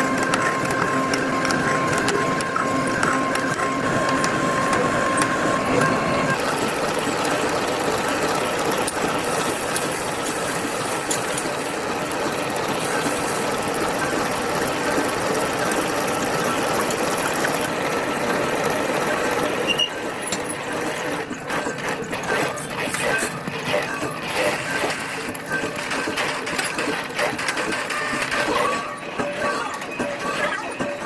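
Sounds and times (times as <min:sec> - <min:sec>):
knocks and clicks: 0:00.0 - 0:06.5
factory machinery running: 0:00.0 - 0:31.0.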